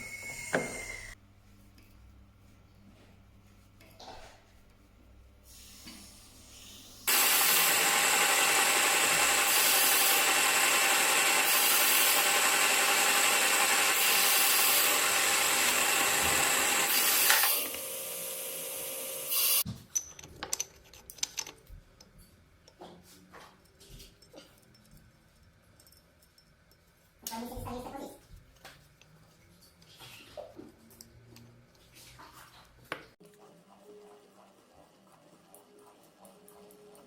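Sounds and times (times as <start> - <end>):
power tool running under load: 0.0 - 1.2, 7.1 - 19.6
handling knocks and clicks: 19.6 - 22.8.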